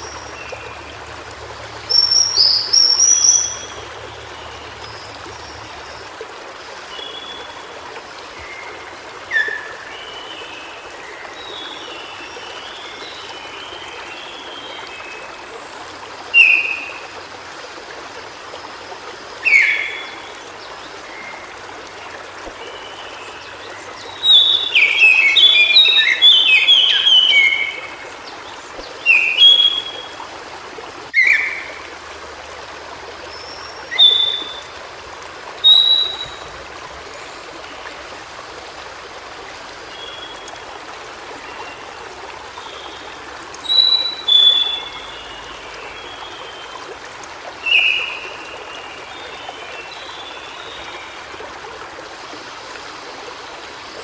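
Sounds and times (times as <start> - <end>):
stream rushing: 0.0 - 54.0
bird singing: 1.9 - 3.8, 22.8 - 28.0, 33.3 - 34.7, 35.6 - 36.5, 43.6 - 46.7.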